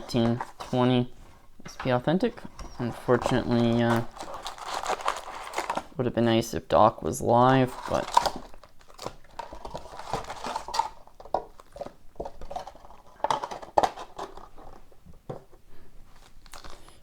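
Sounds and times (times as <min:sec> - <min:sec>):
card packs tapping and rustling: 0:00.0 - 0:06.0, 0:07.3 - 0:17.0.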